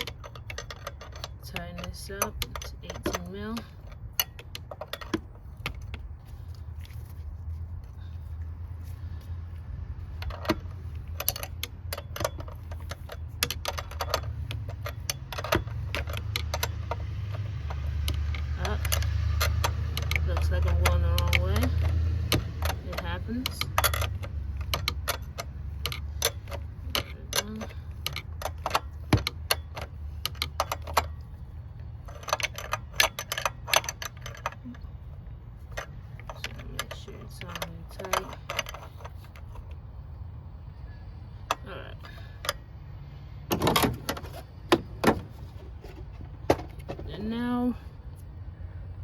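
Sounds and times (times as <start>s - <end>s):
hand ratchet clicking: 0.0s - 6.0s, 10.2s - 31.3s, 32.0s - 34.7s
steady low hum: 0.0s - 49.0s.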